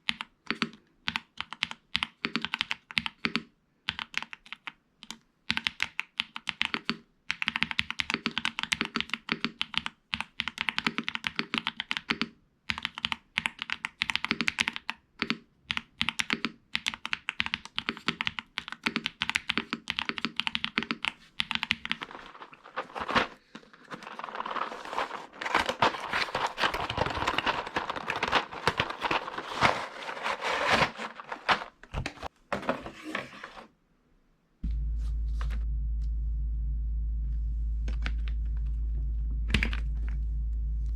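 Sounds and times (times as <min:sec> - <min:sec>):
mechanical keyboard typing: 0:00.0 - 0:22.4
steady low hum: 0:34.6 - 0:40.9.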